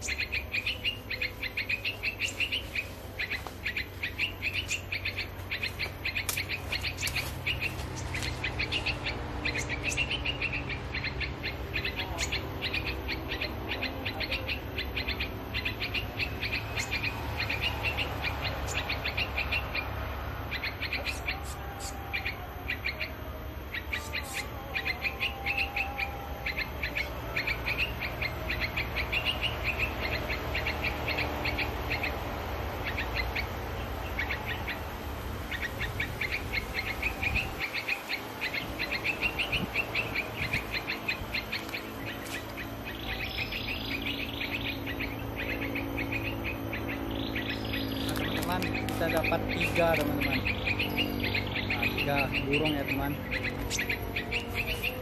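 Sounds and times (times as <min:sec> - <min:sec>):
low rumble of road traffic: 0:00.0 - 0:55.0
small songbirds chirping: 0:00.0 - 0:55.0
low wavering bird call: 0:20.5 - 0:55.0.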